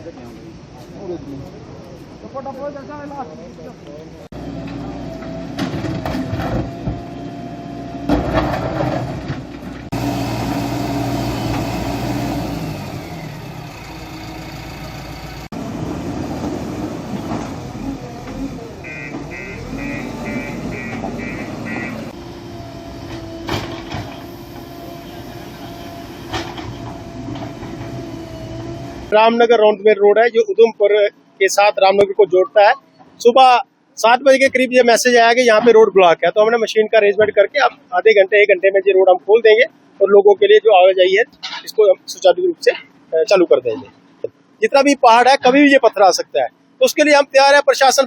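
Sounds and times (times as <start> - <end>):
vehicle engines running: 0.1 - 29.6.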